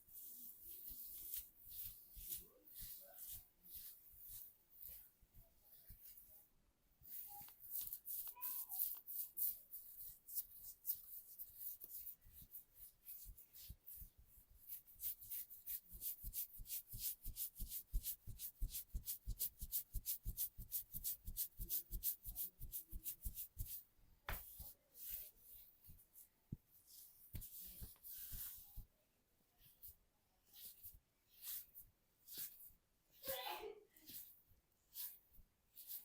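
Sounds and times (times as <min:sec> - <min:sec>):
hands tapping skin in massage: 0:14.7 - 0:24.7, 0:27.3 - 0:28.6.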